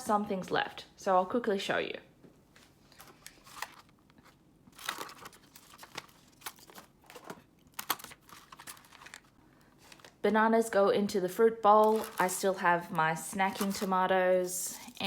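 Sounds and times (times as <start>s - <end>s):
packaging rustling and crinkling: 2.9s - 10.2s, 11.8s - 12.6s, 13.3s - 15.0s.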